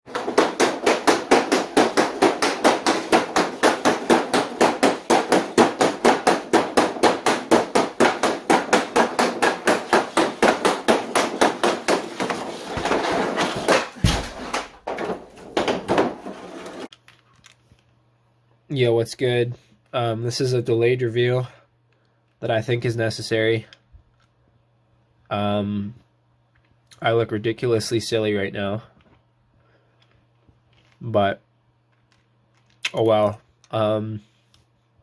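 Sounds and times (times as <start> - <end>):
heavy thump: 0.1 - 16.9
hockey stick knocking puck: 0.1 - 16.9.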